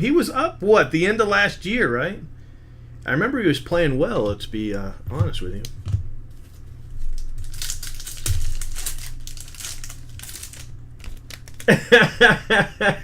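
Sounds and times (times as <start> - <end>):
foil wrapper crinkling: 6.3 - 12.0
man chuckling: 11.6 - 13.0.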